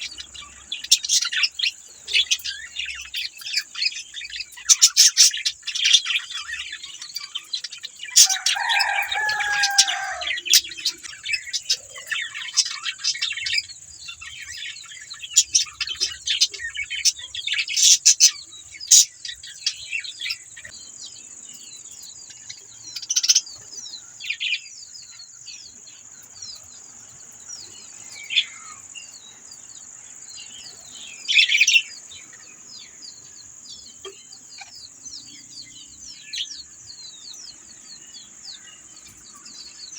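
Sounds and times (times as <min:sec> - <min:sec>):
budgerigars chattering: 0:00.0 - 0:20.7, 0:30.5 - 0:39.9.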